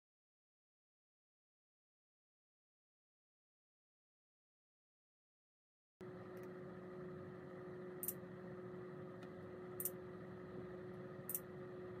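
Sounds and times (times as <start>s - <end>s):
faint steady hum: 6.0s - 12.0s.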